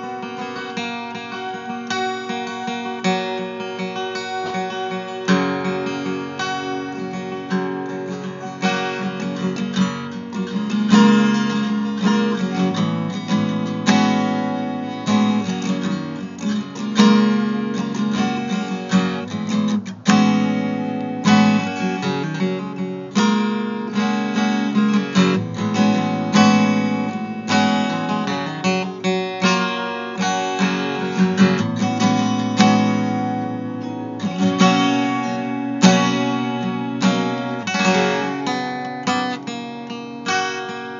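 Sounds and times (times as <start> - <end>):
acoustic guitar chords strummed: 0.0 - 40.9.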